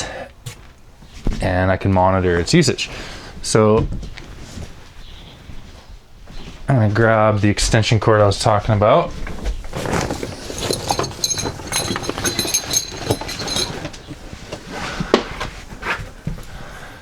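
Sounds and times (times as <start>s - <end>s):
rummaging knocks and clatter: 9.1s - 16.5s
metallic clinking and jingling: 9.8s - 14.2s.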